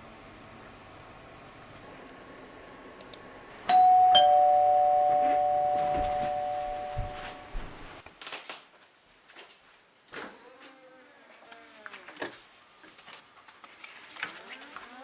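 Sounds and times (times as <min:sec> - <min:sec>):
two-tone doorbell chime: 0:03.7 - 0:07.8.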